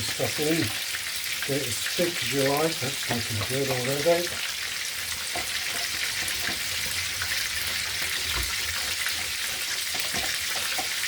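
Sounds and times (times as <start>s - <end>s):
sausages sizzling in a pan: 0.0s - 11.0s
small crackles: 3.1s - 11.0s.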